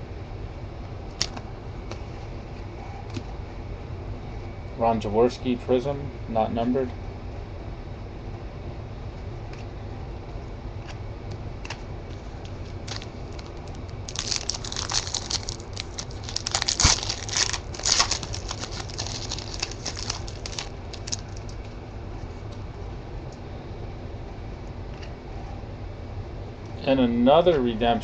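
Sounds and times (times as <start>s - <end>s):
foil wrapper crinkling: 12.4s - 21.8s.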